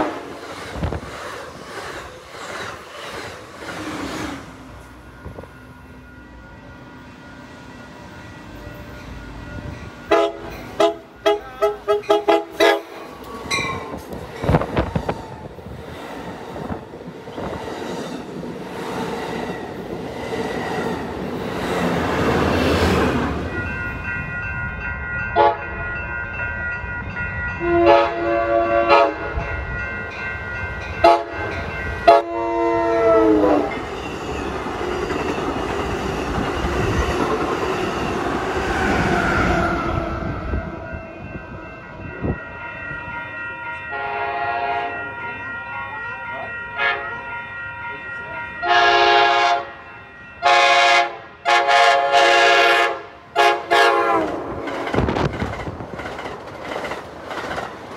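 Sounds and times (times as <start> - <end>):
train horn blasts: 9.5 - 13.8, 25.4 - 25.8, 27.6 - 29.4, 31.0 - 33.8, 43.9 - 45.1, 46.8 - 47.2, 48.6 - 49.8, 50.4 - 54.4.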